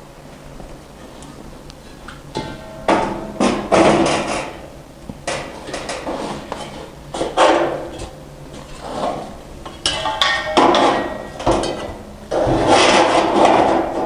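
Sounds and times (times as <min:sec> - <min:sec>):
hardware rubbing and scraping: 0:05.3 - 0:14.0.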